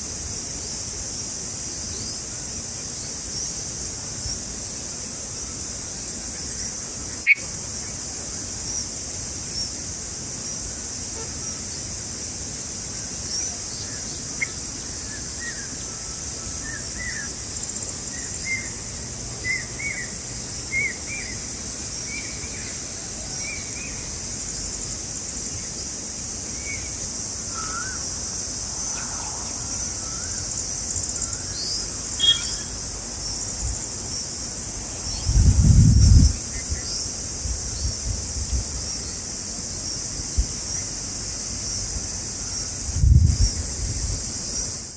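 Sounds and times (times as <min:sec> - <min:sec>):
high-pitched insect drone: 0:00.0 - 0:44.9
bird chirps: 0:26.6 - 0:32.8.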